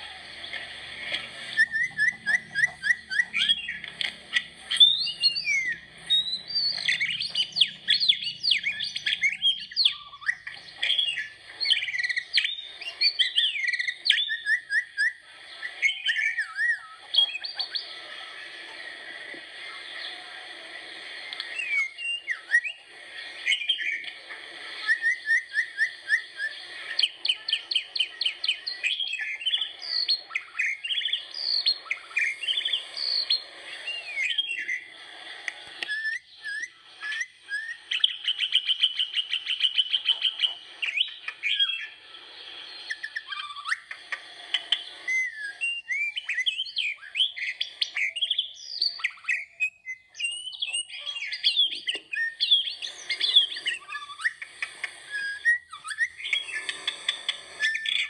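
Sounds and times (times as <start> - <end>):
birds chirping and calling: 0.0 - 58.0.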